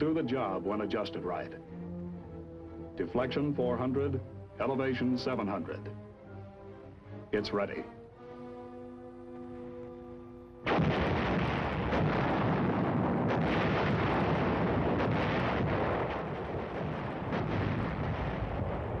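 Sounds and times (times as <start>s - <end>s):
artillery blast: 10.6s - 19.0s
rumble of artillery fire: 10.6s - 19.0s
sharp gunshots: 10.7s - 19.0s.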